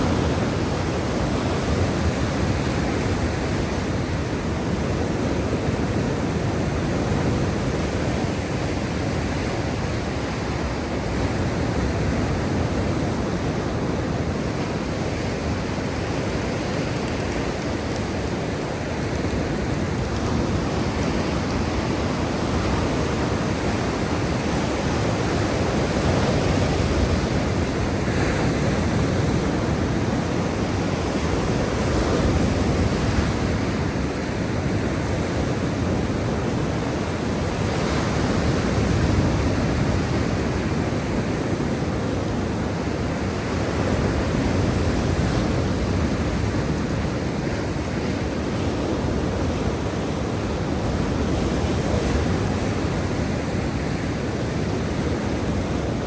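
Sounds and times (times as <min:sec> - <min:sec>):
waves washing on shore: 0:00.0 - 0:56.0.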